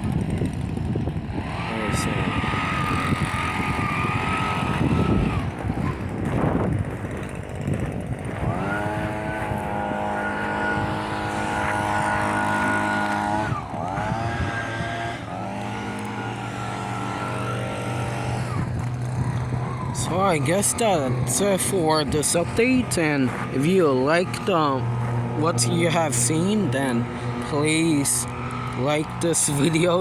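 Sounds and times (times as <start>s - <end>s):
heavy diesel engine revving: 1.2s - 6.1s, 8.1s - 30.0s.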